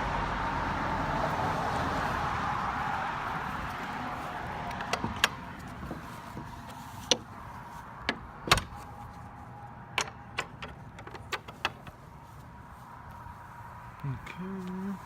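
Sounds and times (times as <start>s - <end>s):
busy road traffic: 0.0s - 15.0s.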